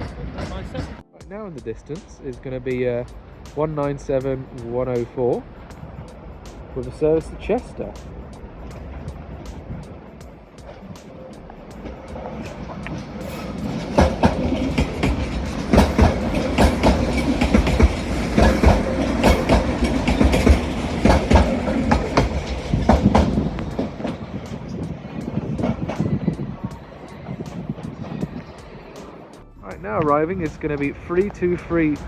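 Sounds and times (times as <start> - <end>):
low train rumble: 0.0 - 32.0
train wheels clattering over joints: 11.7 - 29.3.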